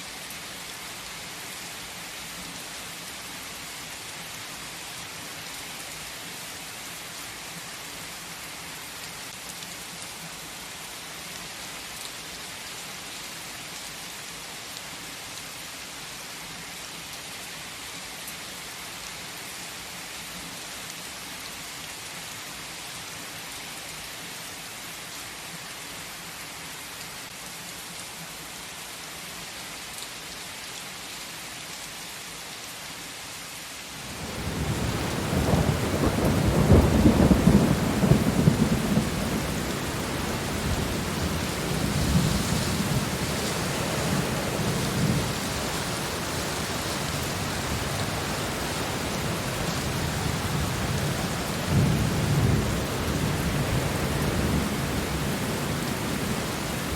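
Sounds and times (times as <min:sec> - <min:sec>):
steady rain: 0:00.0 - 0:56.9
thunder rumbling: 0:34.0 - 0:56.9.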